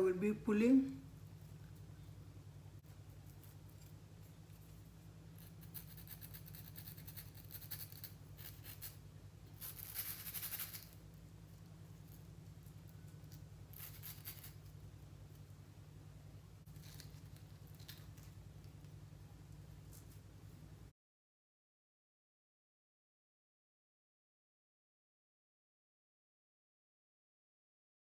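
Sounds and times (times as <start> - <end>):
steady low hum: 0.0 - 20.9.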